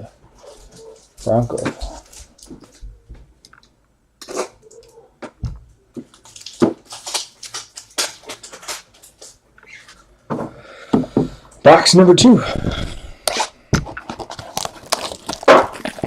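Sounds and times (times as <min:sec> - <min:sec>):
trading cards rustling: 0:06.0 - 0:10.1, 0:13.3 - 0:16.0.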